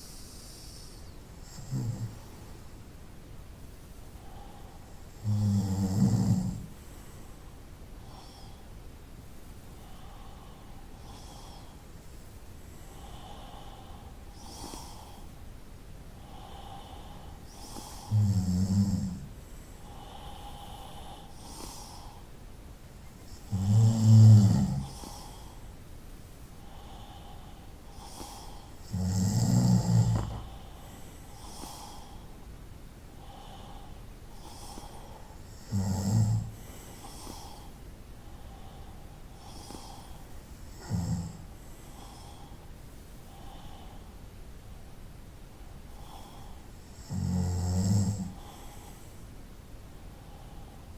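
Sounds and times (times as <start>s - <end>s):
person snoring: 0.2s - 2.3s, 5.1s - 6.8s, 16.3s - 19.3s, 23.3s - 25.6s, 27.9s - 32.2s, 33.2s - 37.8s, 40.7s - 42.5s, 46.0s - 48.8s.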